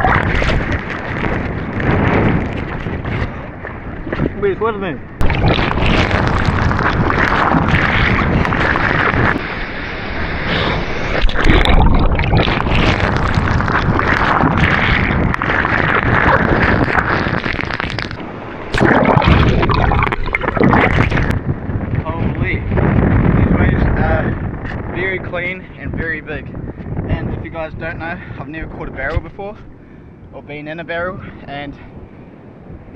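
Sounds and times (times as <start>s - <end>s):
ocean surf breaking: 0.0s - 17.4s
wind buffeting microphone: 0.0s - 32.9s.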